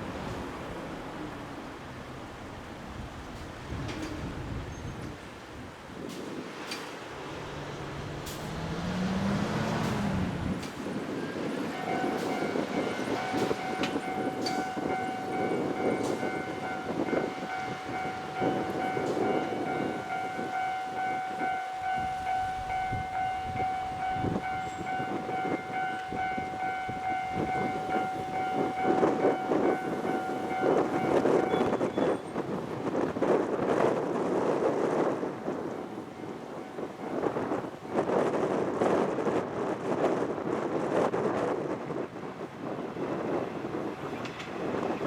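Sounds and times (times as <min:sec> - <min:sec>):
diesel railcar engine and wheels: 0:00.0 - 0:45.0
level crossing alarm ringing: 0:11.7 - 0:32.2.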